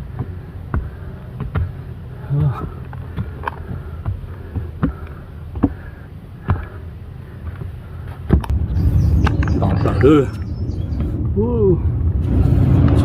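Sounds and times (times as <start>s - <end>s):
footsteps on trail: 0.0s - 11.2s
wind rumble on microphone: 8.4s - 13.0s.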